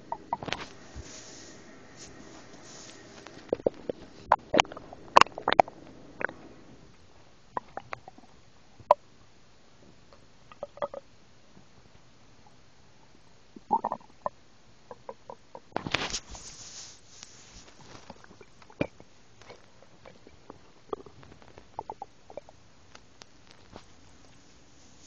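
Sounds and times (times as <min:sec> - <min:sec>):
stomach growling: 0:00.0 - 0:00.6, 0:03.2 - 0:06.9, 0:07.5 - 0:09.0, 0:10.5 - 0:11.1, 0:13.6 - 0:15.8, 0:17.9 - 0:22.6
rustling scrape: 0:00.4 - 0:04.4, 0:15.8 - 0:18.4, 0:23.4 - 0:25.0.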